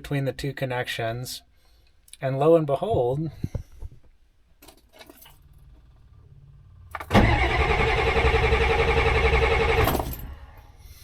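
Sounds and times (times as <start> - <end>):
diesel engine starter cranking: 5.2 - 10.9.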